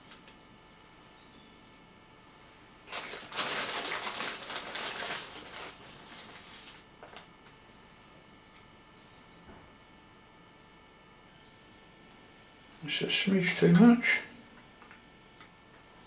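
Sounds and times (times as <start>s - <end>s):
rosin crackling out of plastic bag: 2.9s - 7.3s.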